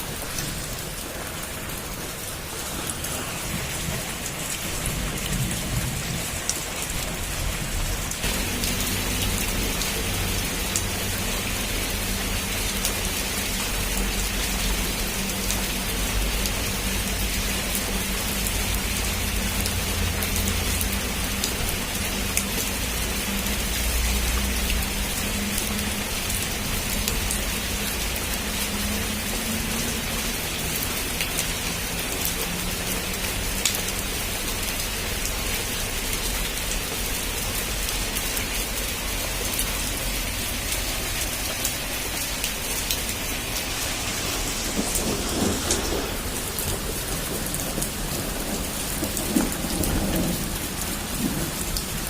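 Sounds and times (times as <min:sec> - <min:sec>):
heavy rain on a roof: 0:00.0 - 0:52.0
low rumble of thunder: 0:03.3 - 0:10.4, 0:43.9 - 0:52.0.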